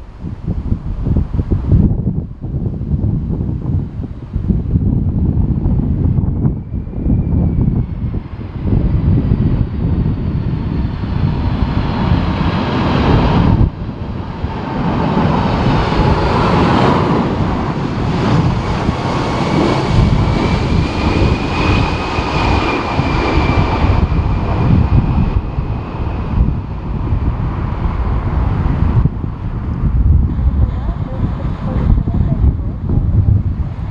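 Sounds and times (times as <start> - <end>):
wind buffeting microphone: 0.0 - 33.9
jet engines whining: 4.1 - 33.9.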